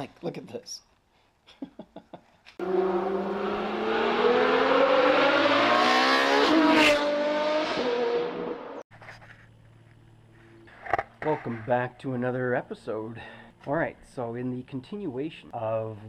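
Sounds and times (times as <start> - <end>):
car engine accelerating: 2.6 - 8.8.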